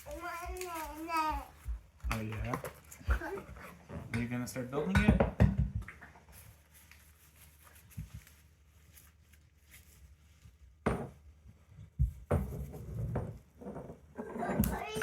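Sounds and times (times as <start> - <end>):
bike parts and packaging clattering: 2.1 - 6.6.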